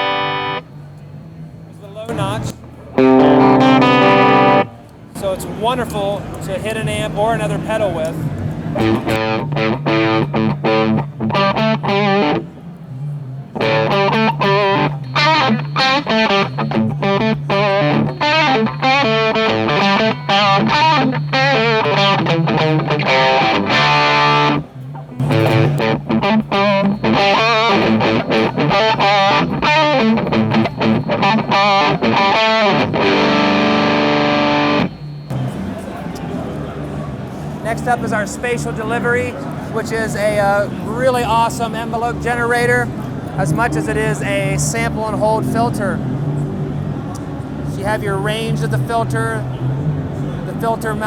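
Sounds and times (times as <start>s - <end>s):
distorted electric guitar riffs: 0.0s - 0.7s, 2.1s - 4.9s, 8.8s - 12.6s, 13.5s - 35.8s.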